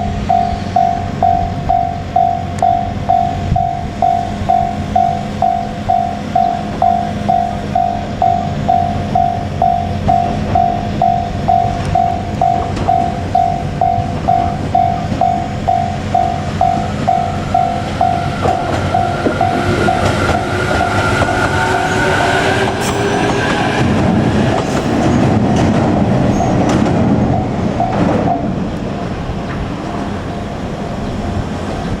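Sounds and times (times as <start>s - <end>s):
level crossing warning bell: 0.0s - 23.5s, 26.3s - 28.6s
electric train passing: 0.0s - 32.0s.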